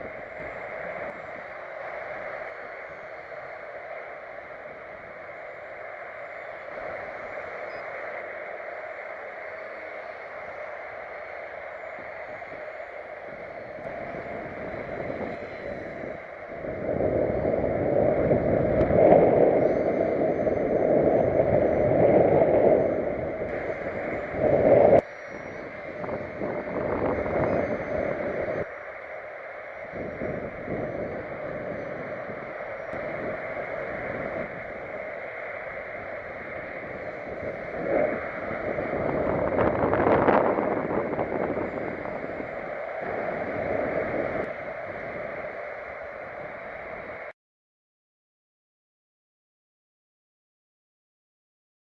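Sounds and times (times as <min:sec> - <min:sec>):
wind buffeting microphone: 0:10.8 - 0:29.1, 0:29.8 - 0:47.3.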